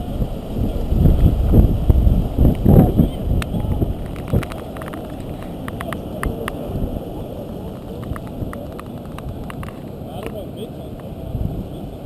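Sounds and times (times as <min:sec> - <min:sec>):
wind buffeting microphone: 0:00.0 - 0:12.0
sharp clicks: 0:03.4 - 0:06.6, 0:07.7 - 0:10.4.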